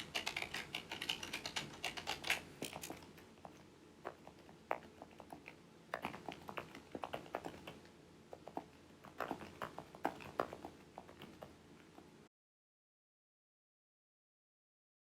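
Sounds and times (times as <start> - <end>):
typing on computer keyboard: 0.0 - 3.1, 4.1 - 7.8, 8.4 - 11.5.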